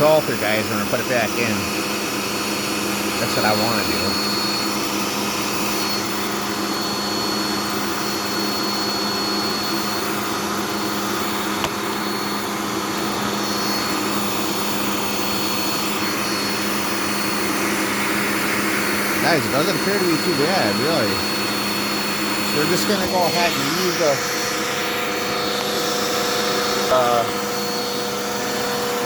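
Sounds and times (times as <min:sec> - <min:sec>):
thin high whine: 0:00.0 - 0:29.0
vacuum cleaner motor humming: 0:00.0 - 0:29.0.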